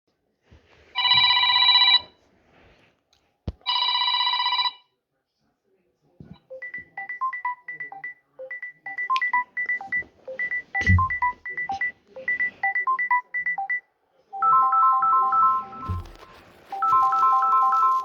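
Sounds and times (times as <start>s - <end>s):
plinking ringtone beeps: 6.5s - 13.8s
smooth ringtone melody: 6.5s - 13.8s, 14.4s - 16.0s, 16.7s - 18.0s.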